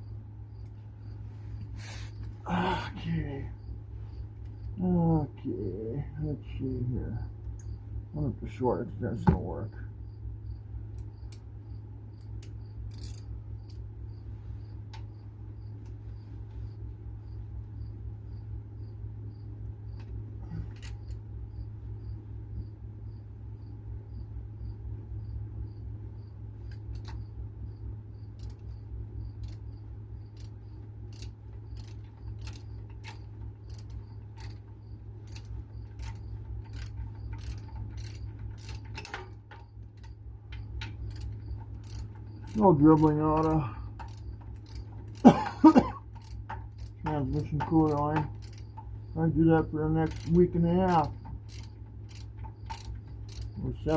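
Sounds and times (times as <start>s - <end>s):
steady low hum: 0.0s - 53.9s
socket ratchet clicking: 12.4s - 13.8s, 30.3s - 34.6s, 35.2s - 48.9s, 50.0s - 53.6s.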